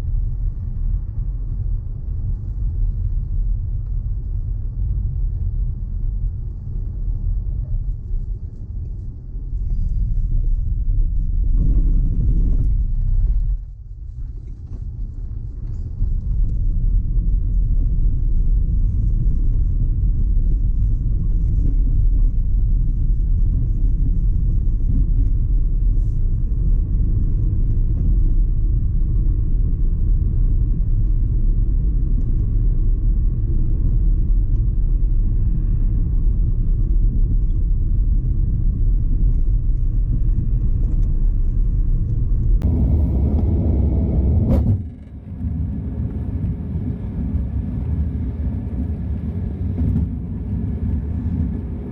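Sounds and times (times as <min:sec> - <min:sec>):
car engine and road noise: 0:39.7 - 0:51.9.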